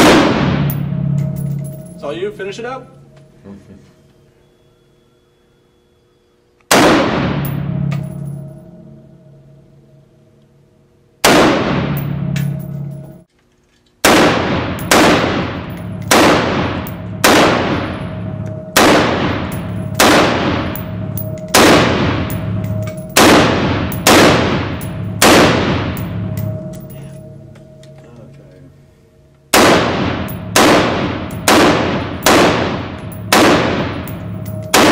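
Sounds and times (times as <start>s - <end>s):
rifle shots echoing indoors: 0.0s - 2.0s, 6.6s - 8.6s, 11.2s - 13.2s, 14.0s - 27.8s, 29.5s - 34.9s.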